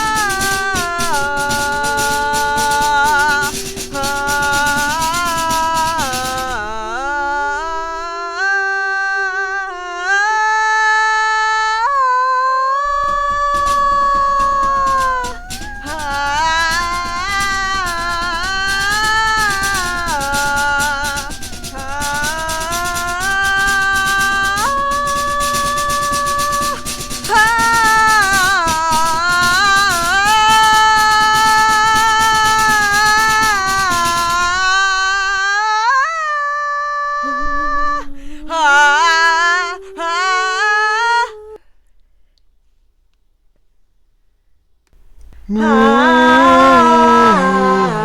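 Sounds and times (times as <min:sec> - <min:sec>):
rattling shaker percussion: 0:00.0 - 0:08.4, 0:12.9 - 0:35.5, 0:37.2 - 0:41.4, 0:45.0 - 0:48.0
woman singing: 0:00.0 - 0:41.6, 0:45.5 - 0:48.0.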